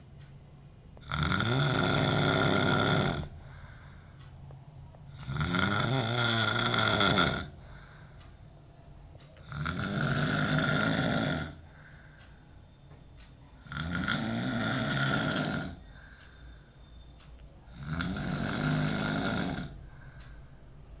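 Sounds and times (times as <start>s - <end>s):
person snoring: 1.0s - 3.6s, 5.1s - 7.7s, 9.4s - 11.9s, 13.6s - 16.0s, 17.7s - 20.1s
quiet breathing: 2.0s - 5.5s, 6.7s - 21.0s.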